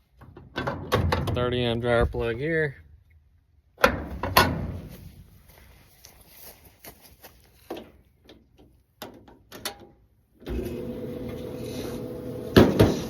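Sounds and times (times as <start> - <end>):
clothes dryer motor hum: 10.5 - 13.0.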